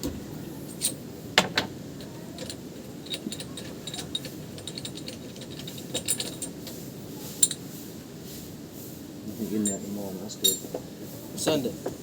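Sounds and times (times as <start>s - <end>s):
metal tools clicking and clinking: 0.7s - 6.8s, 7.4s - 7.7s, 9.6s - 10.8s.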